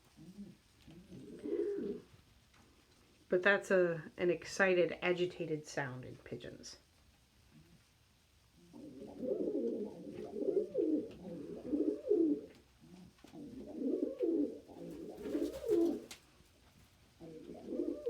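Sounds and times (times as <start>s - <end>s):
pigeon cooing: 0.0s - 2.2s, 8.6s - 16.2s, 17.2s - 18.0s.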